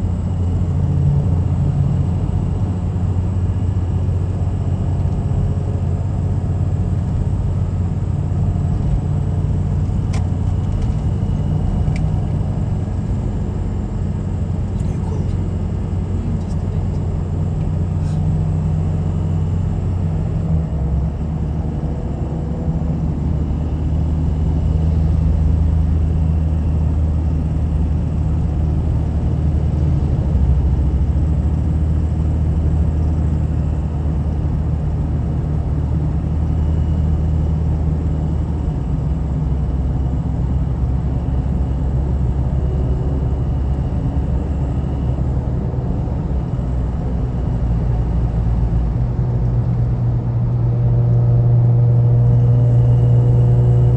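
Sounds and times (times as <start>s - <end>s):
car engine and road noise: 0.0s - 53.9s.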